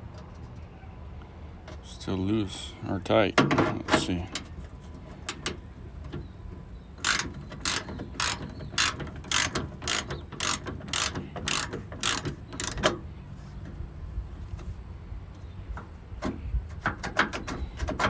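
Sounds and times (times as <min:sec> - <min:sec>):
socket ratchet clicking: 0:04.0 - 0:13.1.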